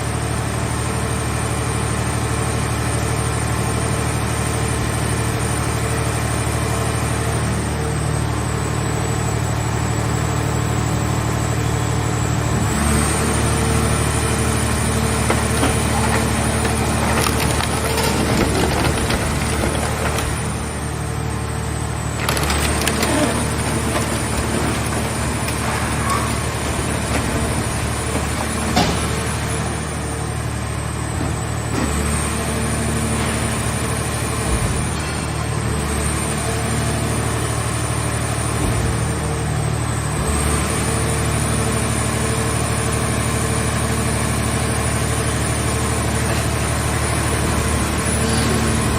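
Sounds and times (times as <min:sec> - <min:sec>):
baler machine drone and whine: 0:00.0 - 0:48.9
baler engine running: 0:11.4 - 0:31.7
metal crackling and creaking: 0:14.3 - 0:29.9.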